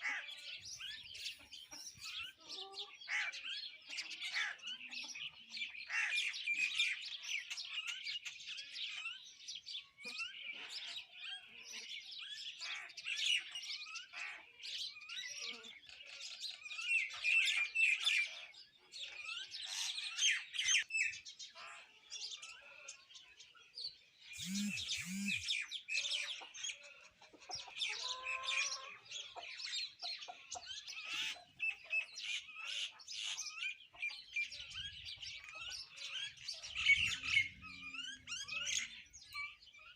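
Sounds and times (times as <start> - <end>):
birds chirping chorus: 0.0 - 39.9
short low-pitched calls: 24.4 - 25.6.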